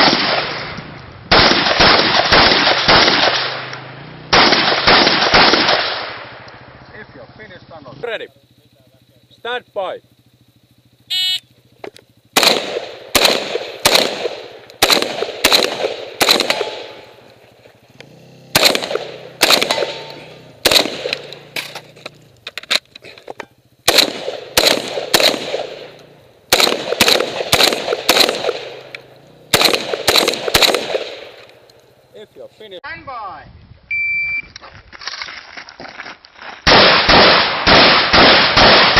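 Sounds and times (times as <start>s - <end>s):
shotgun firing: 0.0s - 0.7s, 1.3s - 3.7s, 4.3s - 6.4s, 12.4s - 17.2s, 18.5s - 21.8s, 23.8s - 31.5s, 36.6s - 38.9s
shot timer beep: 11.1s - 11.4s, 33.9s - 34.5s.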